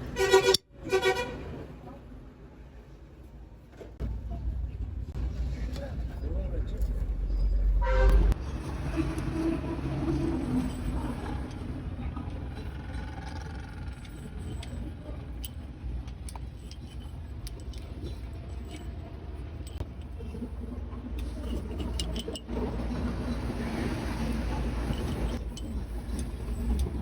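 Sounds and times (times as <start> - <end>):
metallic clinks of hand tools: 21.2 - 22.5.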